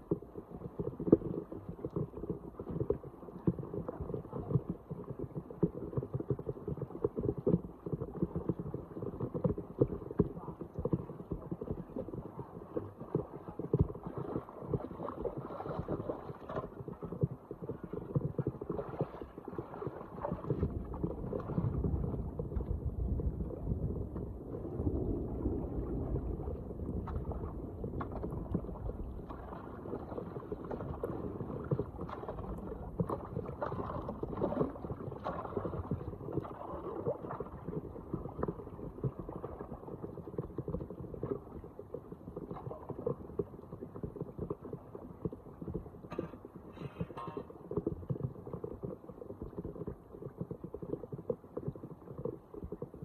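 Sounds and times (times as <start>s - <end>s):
floodwater rushing down storm drain: 10.2s - 43.5s.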